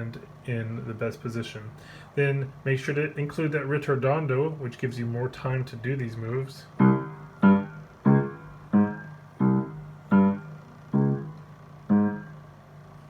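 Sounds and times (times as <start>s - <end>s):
piano notes: 6.7s - 12.8s.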